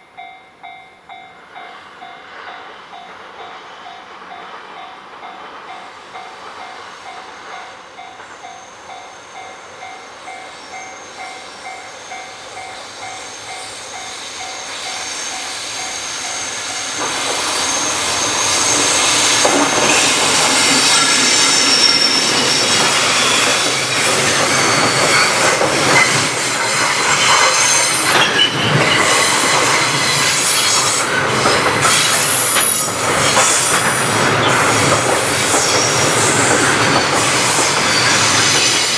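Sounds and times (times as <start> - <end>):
train passing: 0.0 - 38.9
wheels squealing: 10.3 - 38.9.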